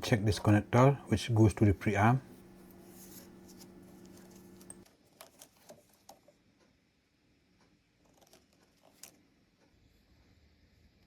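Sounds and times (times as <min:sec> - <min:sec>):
faint low hum: 0:00.0 - 0:11.0.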